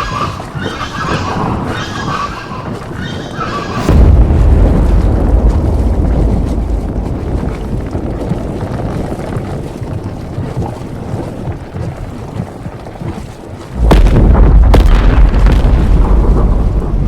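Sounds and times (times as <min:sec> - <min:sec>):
loud eruption blast: 0:03.7 - 0:09.5, 0:13.8 - 0:17.0
low volcanic rumble: 0:03.7 - 0:17.0
sharp cracks: 0:13.8 - 0:17.0.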